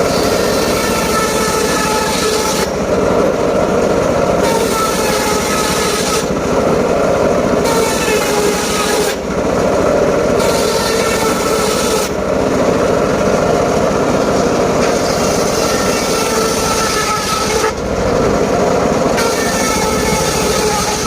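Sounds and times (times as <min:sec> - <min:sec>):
saw blade cutting hiss: 0:00.0 - 0:02.8, 0:04.4 - 0:06.3, 0:07.6 - 0:09.2, 0:10.4 - 0:12.2
sawmill drone: 0:00.0 - 0:21.0.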